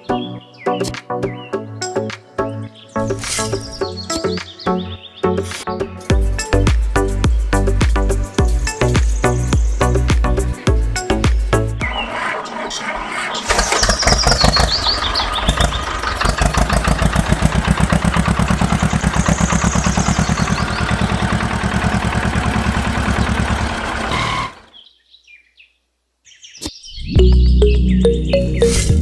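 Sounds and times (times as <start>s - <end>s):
small engine puttering: 12.0s - 24.8s.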